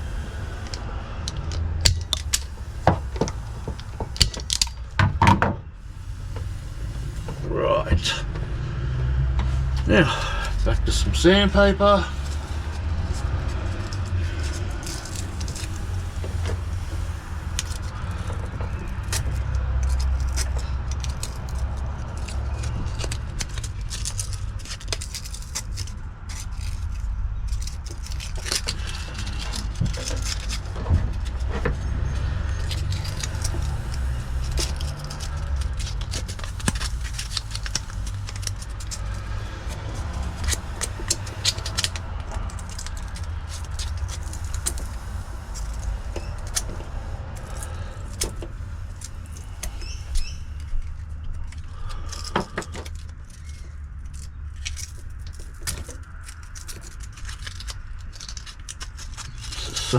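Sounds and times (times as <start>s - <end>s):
sandpaper scraping on wiring: 0.0s - 4.9s, 5.8s - 8.6s, 9.4s - 59.9s
wires clicking and rattling: 0.0s - 5.0s, 8.9s - 59.9s
low rumble: 0.0s - 24.5s.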